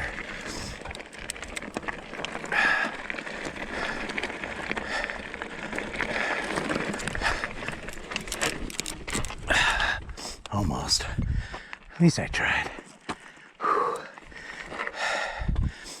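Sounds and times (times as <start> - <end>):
tyres crunching over loose rock: 0.1 - 9.7
bike clattering on stones: 0.3 - 9.8.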